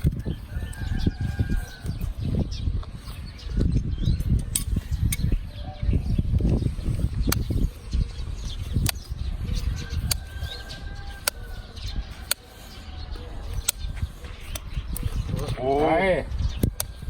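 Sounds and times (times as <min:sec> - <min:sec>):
sharp clicks: 0:04.3 - 0:05.4, 0:07.2 - 0:07.8, 0:08.7 - 0:12.9, 0:13.5 - 0:15.6, 0:16.6 - 0:17.0.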